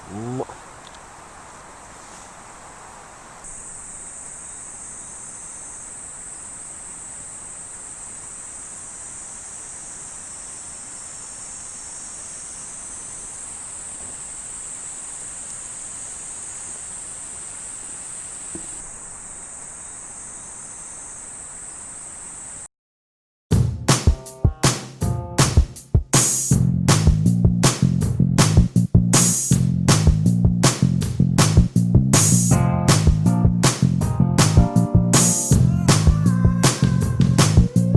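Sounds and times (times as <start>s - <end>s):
faint background hiss: 0.0s - 22.7s
insects chorus: 0.0s - 22.7s, 34.7s - 37.9s.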